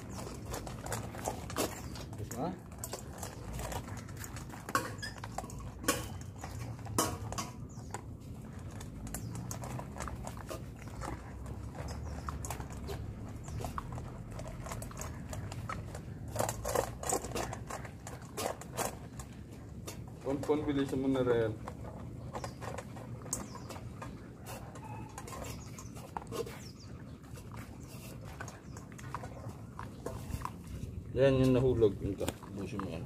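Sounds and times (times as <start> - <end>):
dogs chewing dry kibble: 0.0 - 33.0.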